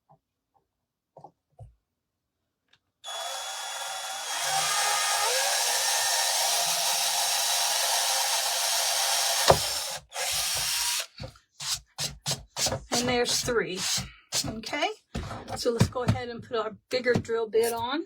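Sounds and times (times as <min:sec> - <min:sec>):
power drill boring wood: 0:03.0 - 0:14.5.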